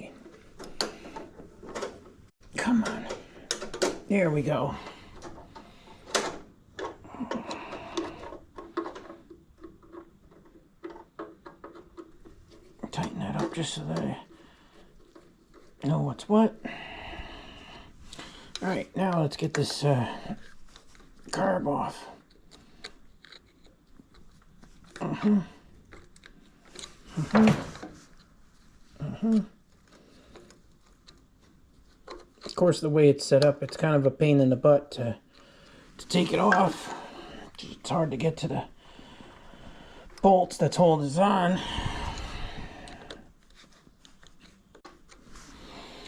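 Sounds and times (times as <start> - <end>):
tools clicking and tapping: 22.2 - 24.4
man's wordless vocal sounds: 25.0 - 25.7, 29.0 - 29.6, 36.0 - 38.8, 40.2 - 43.2.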